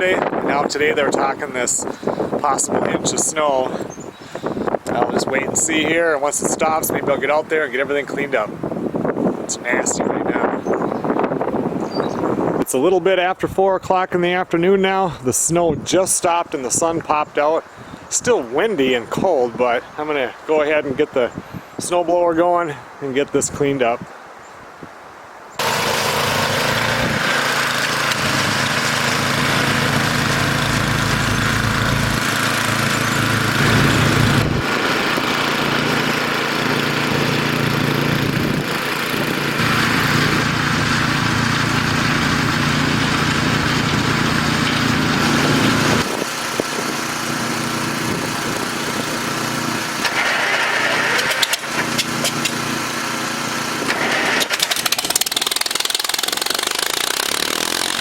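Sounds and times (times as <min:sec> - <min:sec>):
snowblower engine running: 0:00.0 - 0:02.5, 0:25.6 - 0:58.0.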